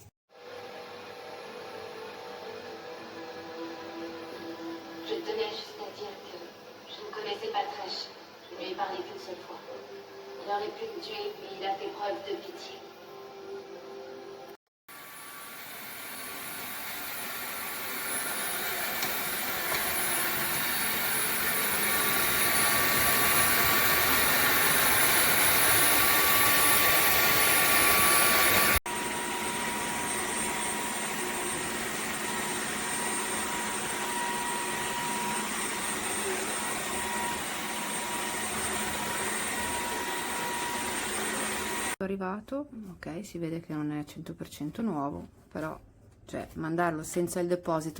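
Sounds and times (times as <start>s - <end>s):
vacuum cleaner whooshing whine: 0.3s - 5.2s, 14.9s - 42.0s.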